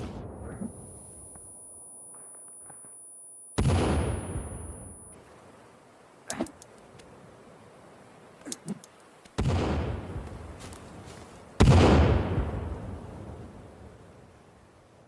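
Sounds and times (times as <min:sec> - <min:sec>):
bomb explosions: 0:03.6 - 0:04.9, 0:11.6 - 0:13.4.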